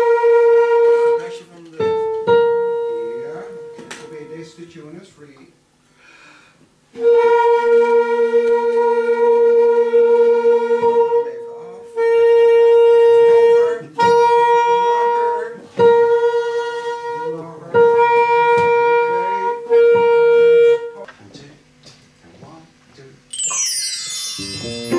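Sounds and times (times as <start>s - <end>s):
wind instrument long held notes: 6.9s - 21.0s, 23.3s - 24.9s.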